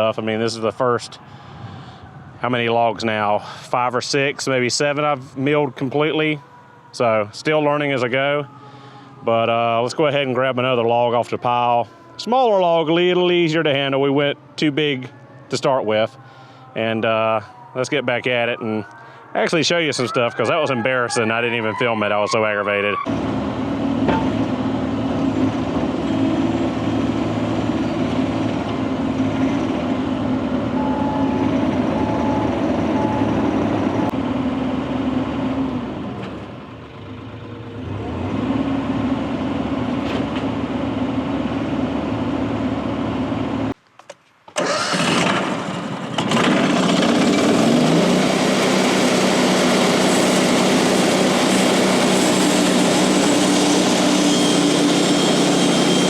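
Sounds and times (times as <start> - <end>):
loader engine running and revving: 23.0 - 43.8, 44.6 - 56.0.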